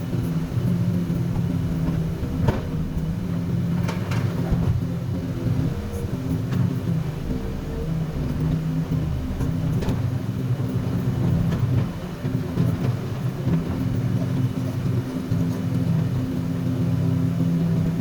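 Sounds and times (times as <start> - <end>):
excavator diesel engine running: 0.0 - 18.0.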